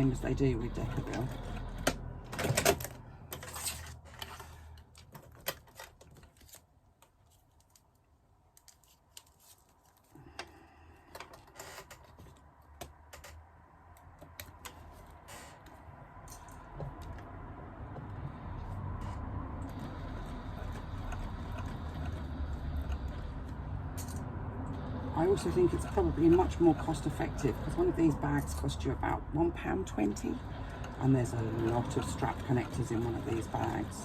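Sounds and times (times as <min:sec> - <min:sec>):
sewing machine running: 0:19.6 - 0:23.8, 0:24.7 - 0:34.0.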